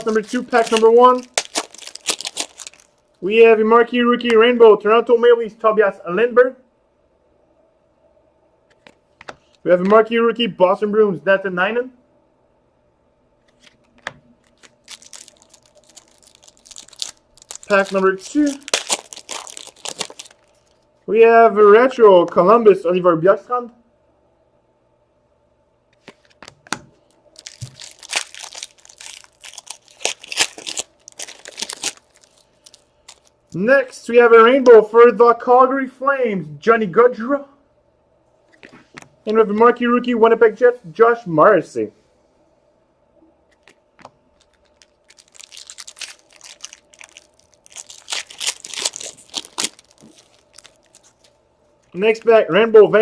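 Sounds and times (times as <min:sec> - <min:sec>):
card pack wrapper crinkling: 0:00.0 - 0:03.2, 0:13.5 - 0:20.8, 0:27.4 - 0:33.4, 0:43.5 - 0:52.0.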